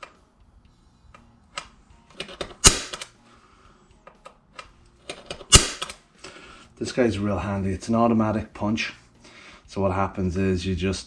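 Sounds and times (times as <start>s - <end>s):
centre punch snap: 2.6s - 3.1s, 5.5s - 6.0s
clicks of tool handling: 4.0s - 6.4s.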